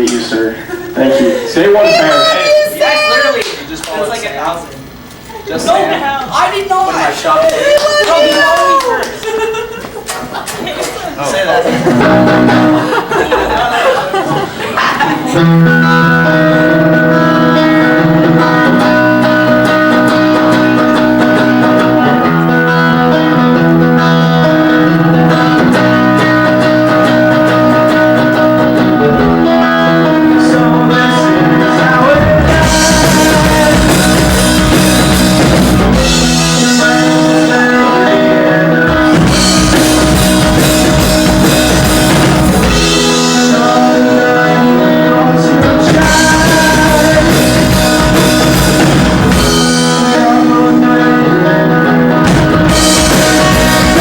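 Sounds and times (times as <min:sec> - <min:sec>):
guitar chords: 0:11.8 - 0:13.6, 0:15.2 - 0:54.0
drum kit and cymbals: 0:11.9 - 0:12.9, 0:32.2 - 0:37.8, 0:38.9 - 0:43.7, 0:45.6 - 0:50.4, 0:52.3 - 0:54.0.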